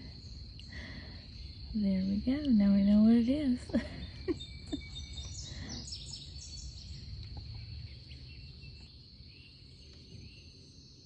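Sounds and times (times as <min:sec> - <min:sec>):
insects trilling: 0:00.0 - 0:11.0
bird chirps: 0:03.8 - 0:11.0.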